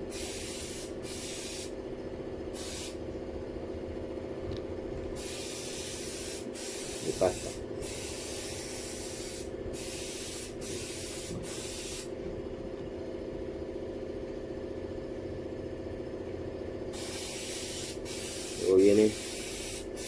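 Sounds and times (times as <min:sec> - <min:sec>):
mechanical hum: 0:00.0 - 0:20.0
hiss: 0:00.1 - 0:01.7, 0:02.6 - 0:03.0, 0:05.2 - 0:12.1, 0:17.0 - 0:20.0.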